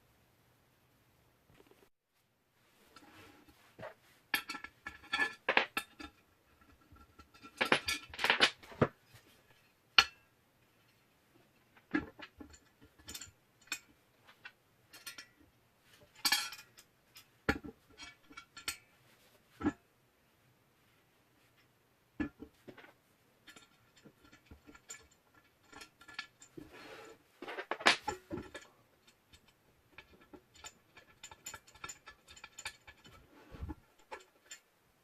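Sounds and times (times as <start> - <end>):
metal parts clinking and rattling: 4.4 - 8.7, 22.8 - 26.6, 27.4 - 34.7.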